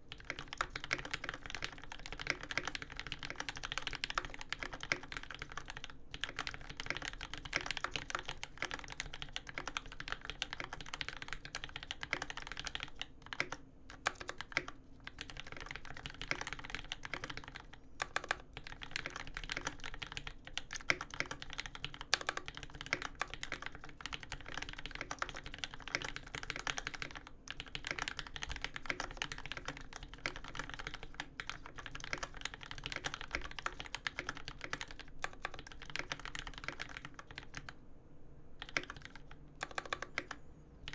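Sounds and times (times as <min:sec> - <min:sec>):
fast mechanical keyboard typing: 0:00.0 - 0:37.8, 0:38.6 - 0:40.9.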